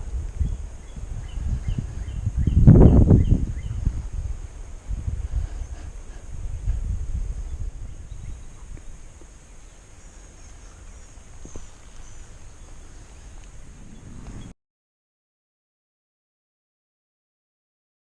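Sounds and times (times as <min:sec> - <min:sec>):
wind rumble on microphone: 0:00.0 - 0:14.6
faint clicks: 0:13.3 - 0:13.6.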